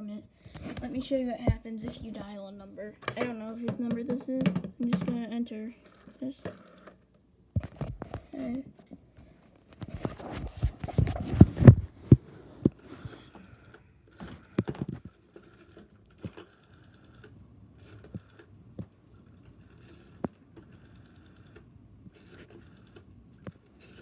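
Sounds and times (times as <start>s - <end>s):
rotary phone dial clicking: 5.8s - 7.0s, 13.2s - 24.0s.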